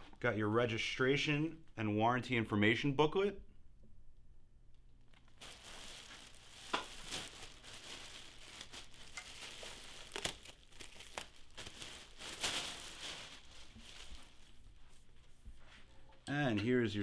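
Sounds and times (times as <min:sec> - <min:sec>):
sharp plastic crackles and snaps: 0:04.7 - 0:14.4
plastic wrapping crinkling: 0:04.9 - 0:15.8.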